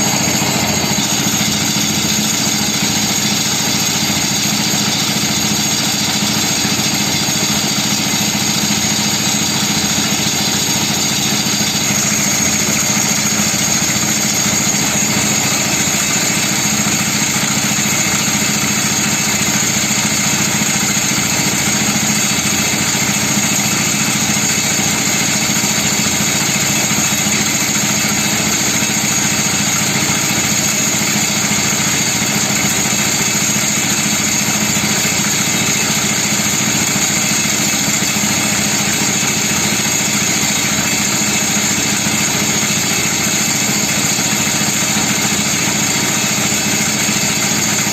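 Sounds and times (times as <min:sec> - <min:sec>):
small engine droning: 0:00.0 - 0:04.7.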